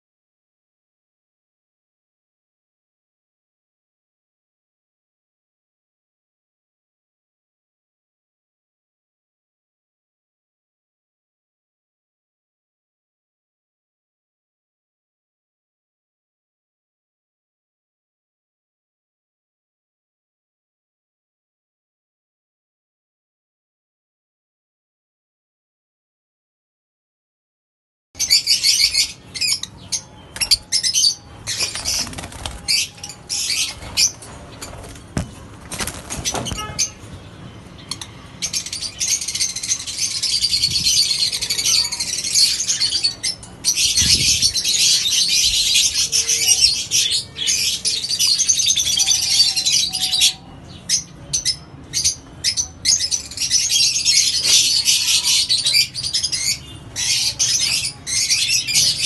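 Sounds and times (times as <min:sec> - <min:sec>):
caged birds chirping: 0:28.2 - 0:59.0.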